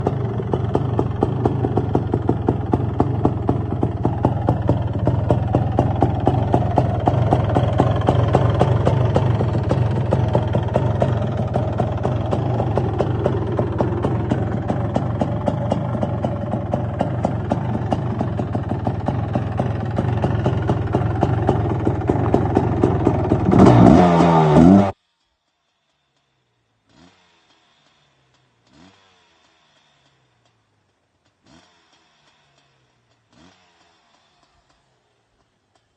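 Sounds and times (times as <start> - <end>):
two-stroke engine idling with pops: 0.0 - 25.0, 25.8 - 35.9.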